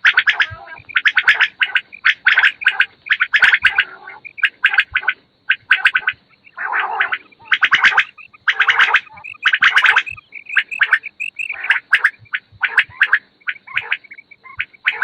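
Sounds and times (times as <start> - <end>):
quails calling: 0.0 - 15.0.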